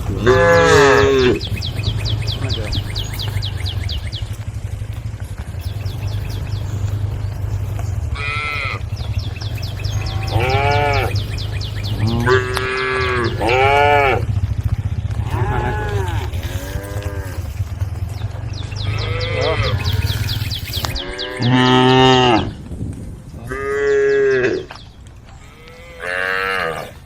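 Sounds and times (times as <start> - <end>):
cattle mooing: 0.0 - 3.8, 8.0 - 14.4, 15.1 - 17.9, 18.7 - 22.6, 23.4 - 24.8, 25.4 - 27.0
steady low hum: 0.0 - 21.7
fast high-pitched chirping: 1.0 - 4.8, 17.4 - 21.3.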